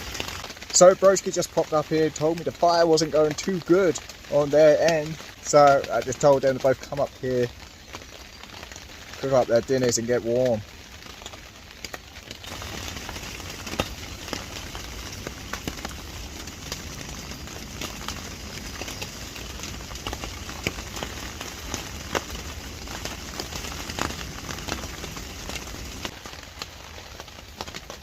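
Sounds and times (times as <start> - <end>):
raindrops tapping: 0.0 - 28.0
steady rain: 0.0 - 28.0.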